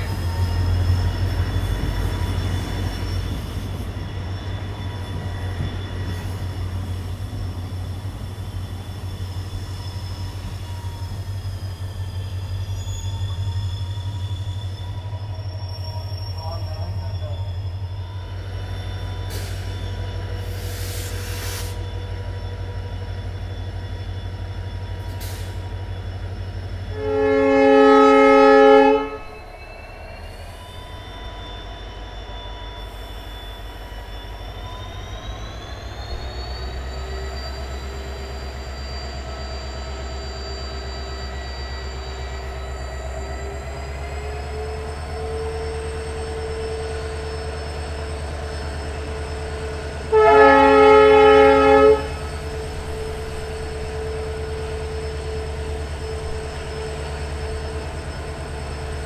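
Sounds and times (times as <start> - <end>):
diesel locomotive engine humming: 0.0 - 59.0
locomotive air horn: 26.8 - 29.5, 50.0 - 53.3.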